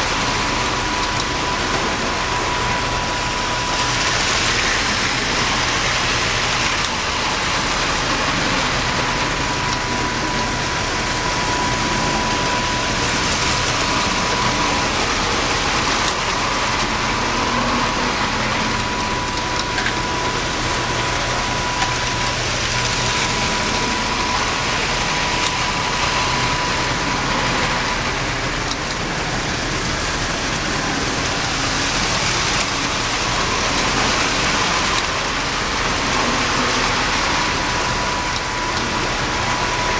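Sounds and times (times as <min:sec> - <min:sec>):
electric motors humming: 0:00.0 - 0:39.9
thin high whine: 0:00.0 - 0:39.9.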